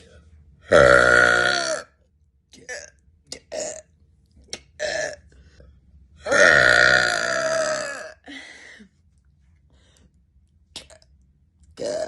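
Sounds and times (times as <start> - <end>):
woman belching: 0.7 - 1.8, 2.6 - 3.8, 4.8 - 5.2, 6.2 - 8.2, 11.8 - 12.0.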